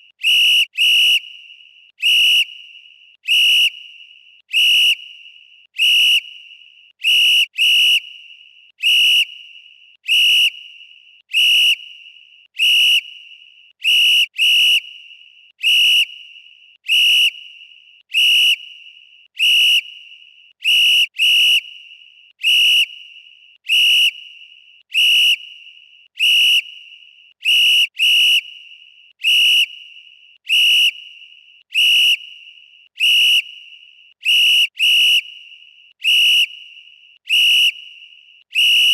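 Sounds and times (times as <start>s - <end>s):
referee whistle blasts: 0.2s - 2.7s, 3.3s - 4.0s, 4.6s - 5.2s, 15.6s - 38.9s.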